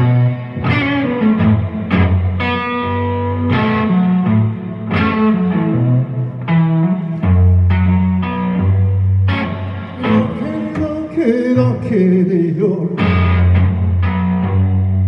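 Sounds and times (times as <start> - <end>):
person singing: 9.9 - 13.3.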